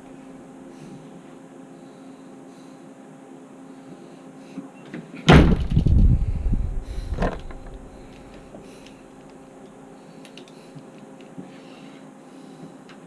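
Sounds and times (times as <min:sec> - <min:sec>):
loud thump with rumbling: 0:05.3 - 0:07.9.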